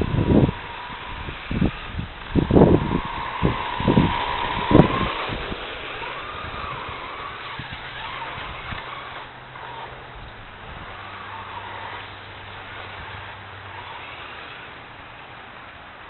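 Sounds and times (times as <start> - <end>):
electric motor whining: 0.0 - 16.0.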